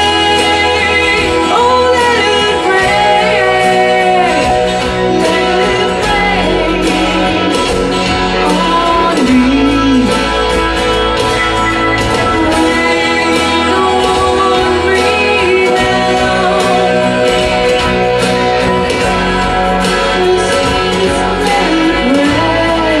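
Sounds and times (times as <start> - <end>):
guitar accompaniment: 0.0 - 23.0
woman singing rock ballad: 0.0 - 23.0.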